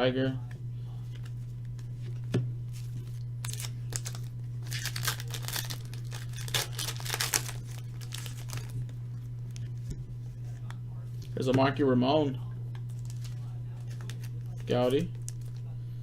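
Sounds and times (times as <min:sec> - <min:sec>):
steady low hum: 0:00.0 - 0:16.0
card pack wrappers crinkling and tearing: 0:02.7 - 0:09.8, 0:12.8 - 0:15.7.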